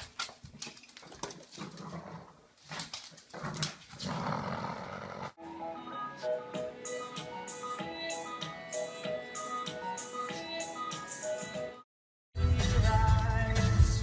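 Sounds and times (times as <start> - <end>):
dog growling: 3.3 - 5.4.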